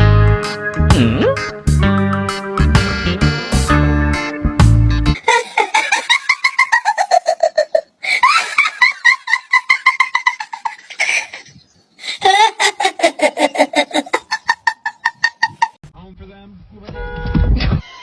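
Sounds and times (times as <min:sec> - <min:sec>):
high-pitched giggling laughter: 0:05.2 - 0:15.8.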